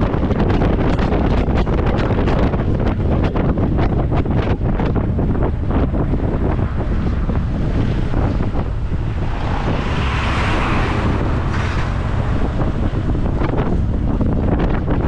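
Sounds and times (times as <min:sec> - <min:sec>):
motorcycle rumble: 0:00.0 - 0:15.0
wind buffeting microphone: 0:00.0 - 0:15.0.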